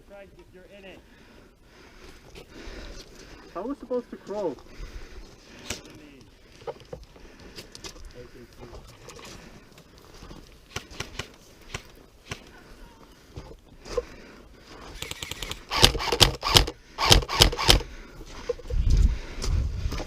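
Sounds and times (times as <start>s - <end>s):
airsoft guns firing: 10.7s - 12.5s, 15.0s - 17.9s.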